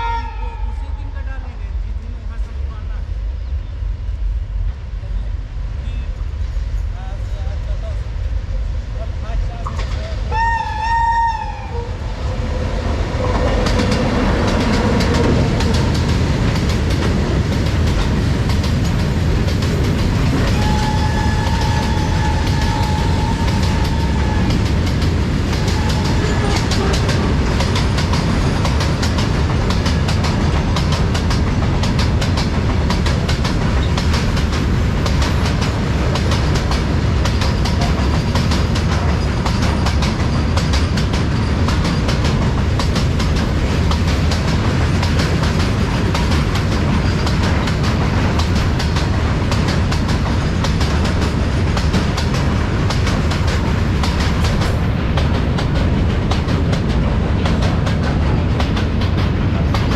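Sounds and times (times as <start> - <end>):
freight train wheels clattering: 12.3 - 59.9.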